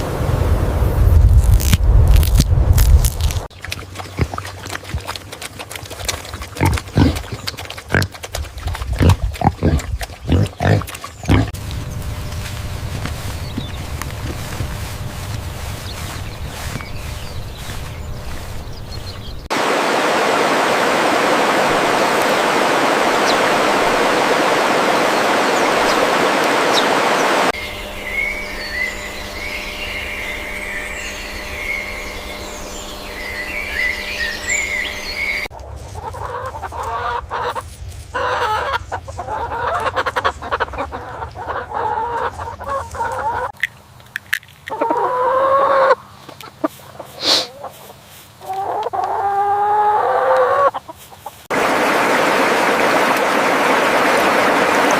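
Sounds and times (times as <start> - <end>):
chickens clucking: 3.7 - 11.6, 34.8 - 43.6, 44.6 - 51.5
small birds chirping: 6.2 - 19.5, 25.1 - 35.6
steady rushing noise: 11.4 - 28.0.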